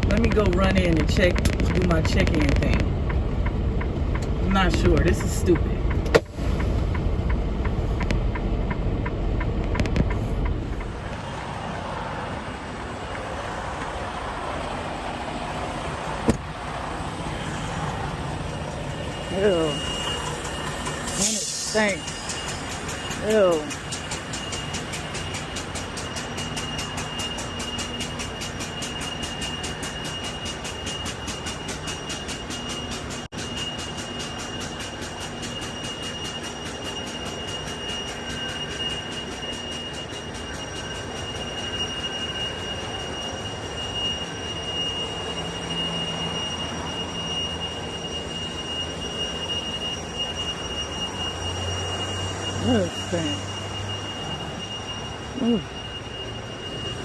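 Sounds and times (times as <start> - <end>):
rapid fine ticking: 0.0 - 11.0
machinery low rumble: 0.0 - 13.6
high-pitched metallic squeal: 17.4 - 57.0.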